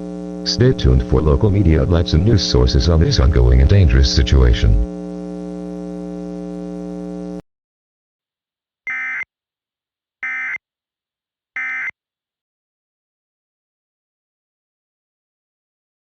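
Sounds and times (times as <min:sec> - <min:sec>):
low buzzing tone: 0:00.0 - 0:07.4.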